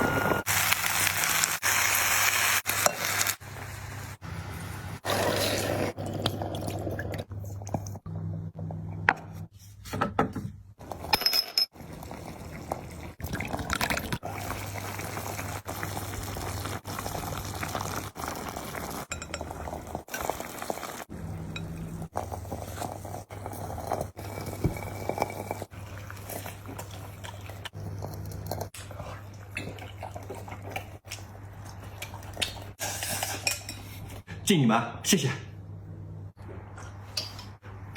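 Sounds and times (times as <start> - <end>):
drink being poured: 11.8 - 21.0
glass and dishes clinking: 19.1 - 19.5.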